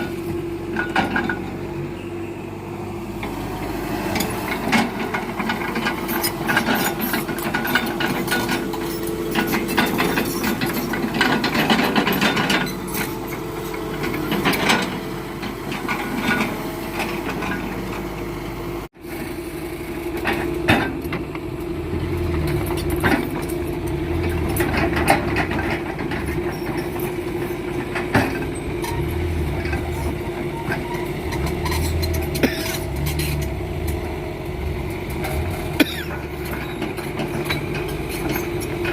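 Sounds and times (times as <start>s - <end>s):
heavy machinery diesel engine: 0.0s - 38.9s
metal clanks and knocks: 4.5s - 17.7s, 22.3s - 34.1s.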